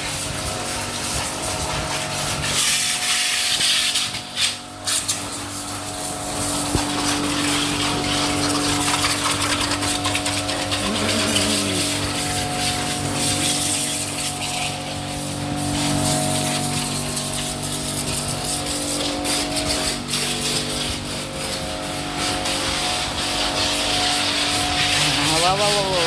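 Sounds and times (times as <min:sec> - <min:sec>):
water spray hissing: 0:00.1 - 0:26.0
motor hum: 0:05.6 - 0:17.0.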